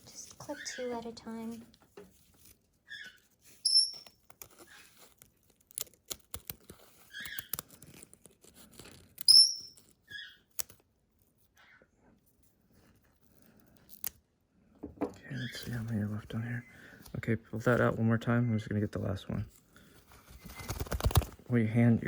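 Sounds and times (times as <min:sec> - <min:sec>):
parrot chirping and squeaking: 0:00.4 - 0:01.1, 0:02.8 - 0:05.0, 0:07.0 - 0:07.6, 0:09.2 - 0:10.5, 0:11.6 - 0:11.8
scissors snipping: 0:04.3 - 0:09.9.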